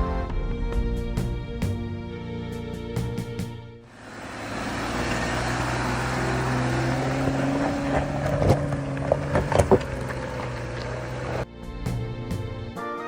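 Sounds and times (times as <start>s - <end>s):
vehicle engine running: 3.9s - 12.6s.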